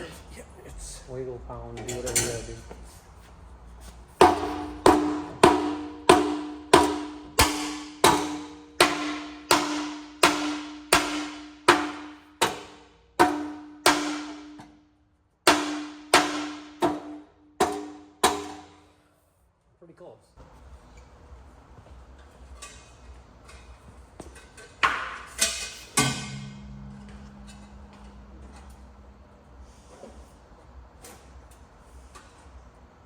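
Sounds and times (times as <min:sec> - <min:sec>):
hammer blows on metal pipe: 0:26.0 - 0:28.6.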